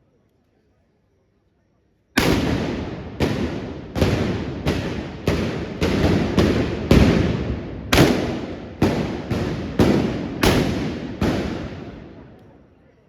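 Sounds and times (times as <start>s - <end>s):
gunshot bangs with echo: 2.2s - 12.3s.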